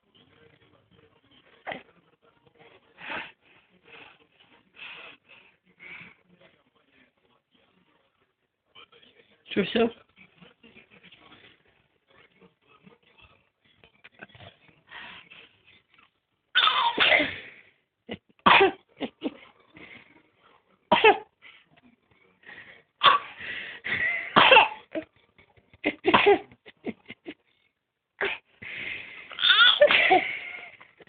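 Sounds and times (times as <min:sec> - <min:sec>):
person sneezing: 0:16.6 - 0:17.4.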